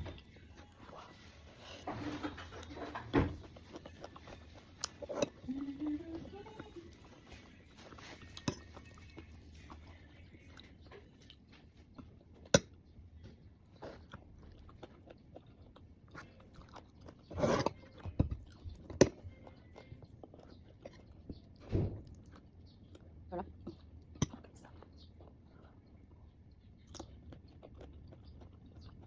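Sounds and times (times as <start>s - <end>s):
biting and chewing fruit: 0.0s - 29.0s
crunching mouth sounds: 26.8s - 29.0s.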